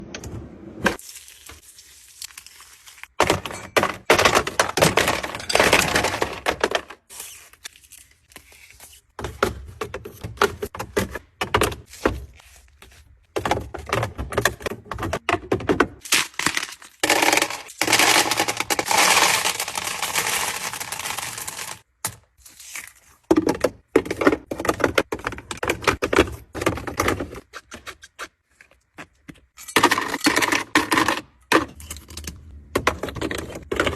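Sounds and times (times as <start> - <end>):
containers thunking and clicking: 3.2 - 7.0, 13.3 - 21.7, 23.3 - 27.8, 29.2 - 33.9
plastic packaging crinkling: 16.1 - 21.9.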